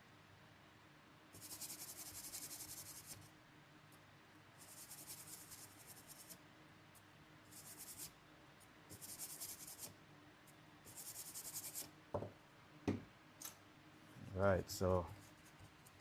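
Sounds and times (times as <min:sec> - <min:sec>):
brush scratching circuit board: 0:01.4 - 0:03.3, 0:04.6 - 0:06.4, 0:07.5 - 0:08.1, 0:08.9 - 0:10.0, 0:10.9 - 0:11.9, 0:14.8 - 0:16.0.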